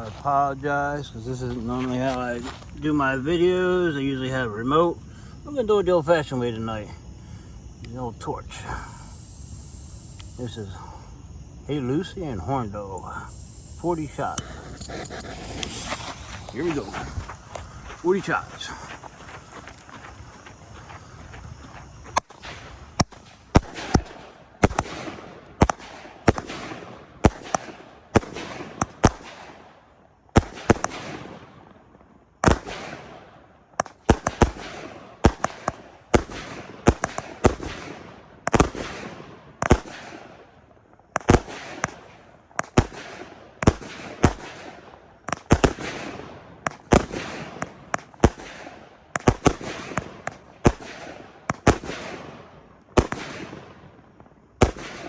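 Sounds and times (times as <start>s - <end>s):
firework crackling: 8.3s - 11.0s, 13.0s - 29.2s, 45.3s - 53.9s
firework bangs: 8.5s - 10.8s, 13.2s - 21.4s, 22.1s - 29.4s, 45.3s - 54.0s, 54.6s - 55.0s.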